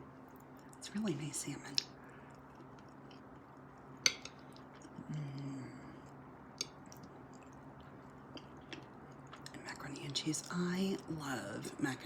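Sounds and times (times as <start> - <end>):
low hum of voice: 4.9 - 6.1.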